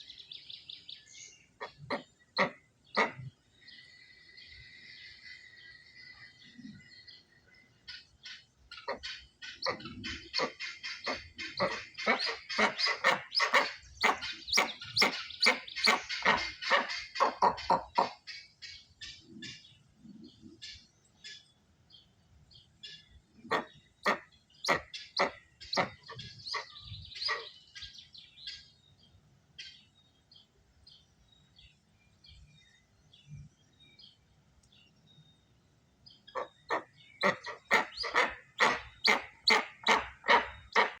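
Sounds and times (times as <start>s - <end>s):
faint bird chirps: 0.0s - 40.0s
bird giving sharp calls: 8.8s - 18.5s, 23.5s - 27.6s, 36.3s - 41.0s.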